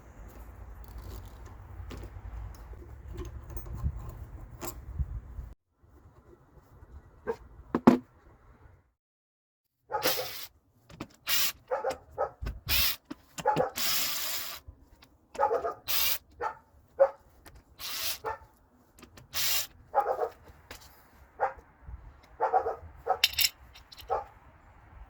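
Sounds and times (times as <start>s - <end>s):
dog barking: 9.9s - 10.4s, 11.7s - 12.4s, 13.4s - 13.8s, 15.4s - 17.2s, 18.2s - 18.5s, 19.9s - 20.4s, 21.4s - 21.6s, 22.4s - 23.2s, 24.1s - 24.3s.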